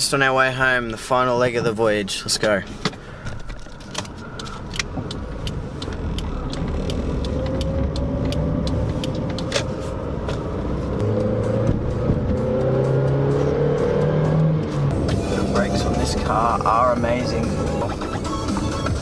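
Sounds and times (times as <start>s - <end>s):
car engine accelerating: 4.4s - 19.0s.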